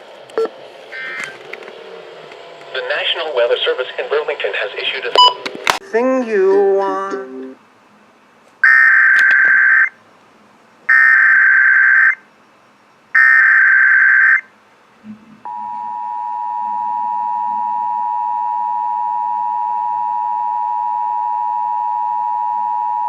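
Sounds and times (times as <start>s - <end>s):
two-tone attention signal: 5.2s - 5.5s, 15.5s - 23.0s.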